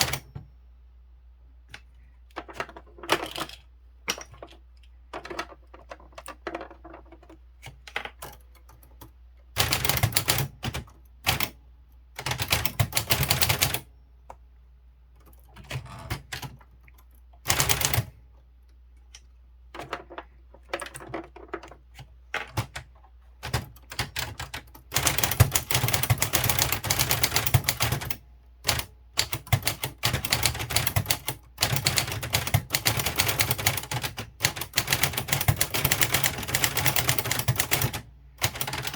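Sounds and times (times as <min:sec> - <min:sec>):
manual typewriter key clacks: 0:00.0 - 0:00.4, 0:20.7 - 0:38.9.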